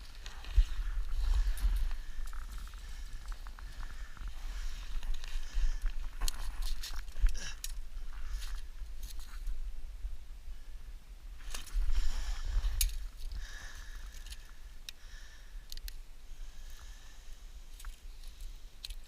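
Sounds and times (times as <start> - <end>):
wind rumble on microphone: 0.0 - 13.4.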